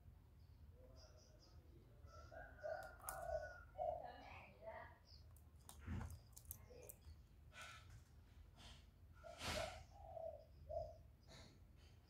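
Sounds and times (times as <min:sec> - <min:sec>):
faint clicks: 0:02.8 - 0:03.3
dove cooing: 0:09.6 - 0:11.0.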